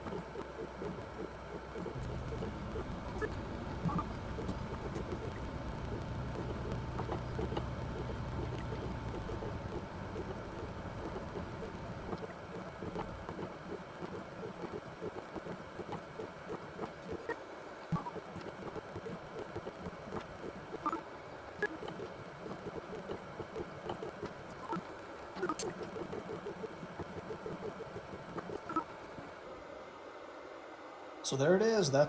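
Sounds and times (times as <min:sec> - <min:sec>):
machine hum: 0:00.0 - 0:17.2
continuous crackling: 0:00.0 - 0:29.5.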